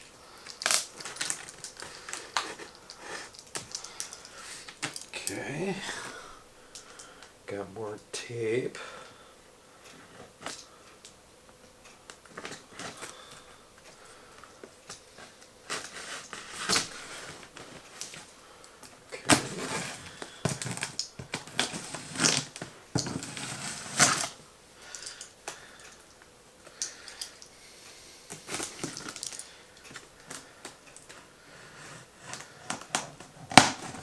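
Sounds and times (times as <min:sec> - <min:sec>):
packing tape pulled free: 0:00.3 - 0:05.2, 0:15.6 - 0:18.3, 0:19.2 - 0:25.6, 0:28.3 - 0:30.4, 0:32.3 - 0:34.0.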